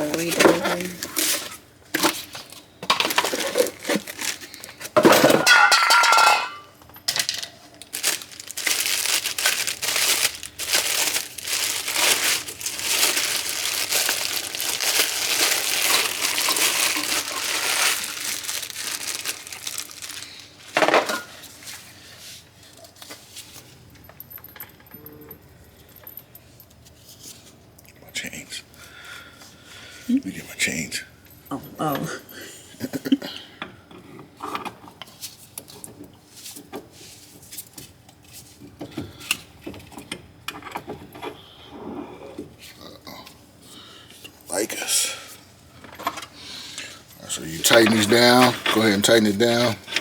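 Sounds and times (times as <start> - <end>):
crinkling and rustling: 0.0 - 24.9, 45.8 - 50.0.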